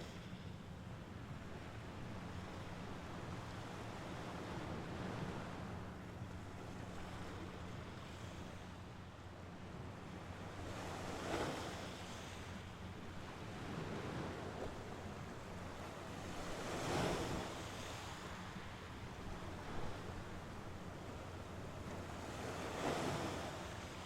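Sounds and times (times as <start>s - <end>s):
low rumble of surf: 0.0s - 24.0s
waves breaking on shore: 10.3s - 24.0s.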